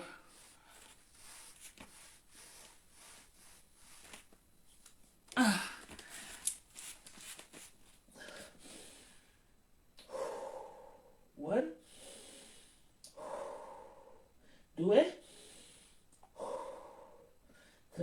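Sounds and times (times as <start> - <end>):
faint rustling: 5.8 - 8.1
person breathing with exertion: 10.0 - 17.9.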